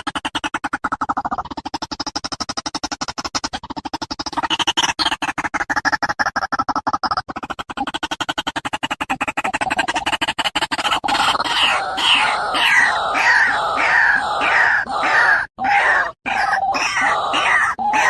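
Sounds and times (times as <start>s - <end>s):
waterhen croaking calls: 11.1s - 18.0s.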